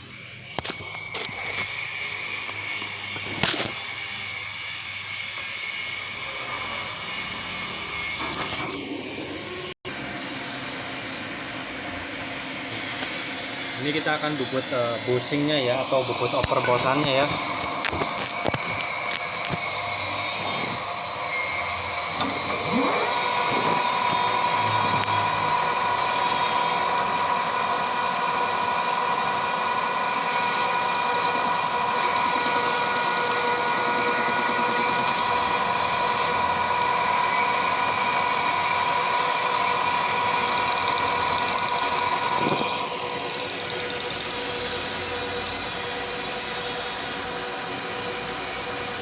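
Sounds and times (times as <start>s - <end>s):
high whine of cutting tool: 0.0s - 49.0s
metal lathe running: 12.1s - 49.0s.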